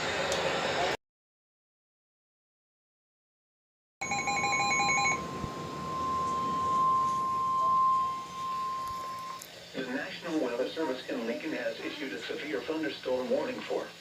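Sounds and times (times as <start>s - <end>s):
pulsing data tones: 4.0s - 9.8s
steady alarm tone: 4.0s - 9.8s
faint radio static: 6.3s - 14.0s.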